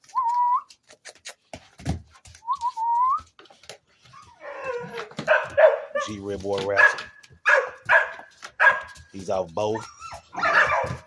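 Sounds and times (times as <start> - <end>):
person whistling: 0.0 - 0.7, 2.4 - 3.3.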